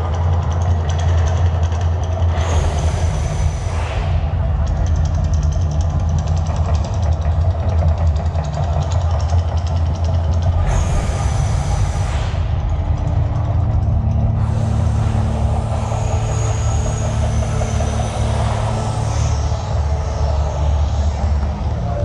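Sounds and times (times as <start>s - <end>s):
deep rumble: 0.0s - 22.0s
hissing rush: 2.3s - 7.1s, 10.4s - 22.0s.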